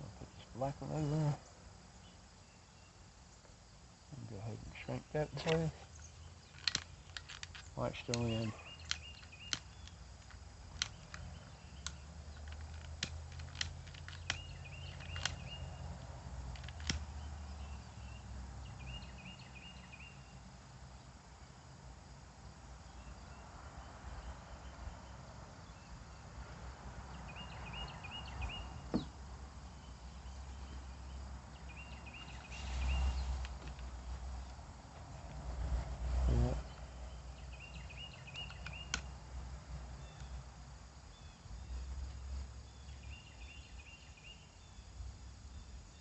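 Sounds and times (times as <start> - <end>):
bird chirping: 0.0 - 21.2, 22.8 - 46.0
clicks of small parts handled: 5.3 - 15.6, 16.5 - 17.0.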